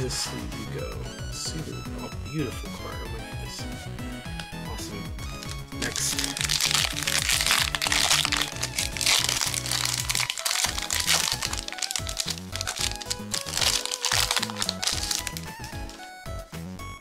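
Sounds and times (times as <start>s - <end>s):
background music: 0.0s - 17.0s
plastic wrapper crinkling: 5.3s - 16.1s.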